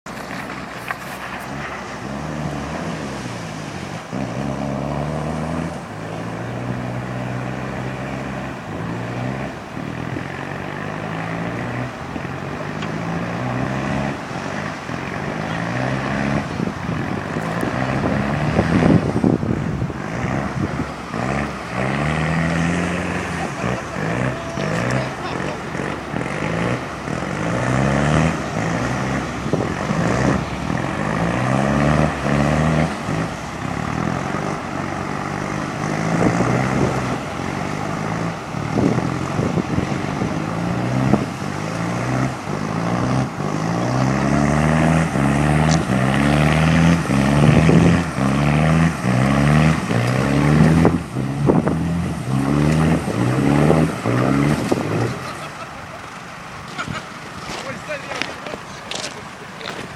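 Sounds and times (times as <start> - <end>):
car engine revving: 0.0 - 59.9
water rushing: 0.0 - 59.9.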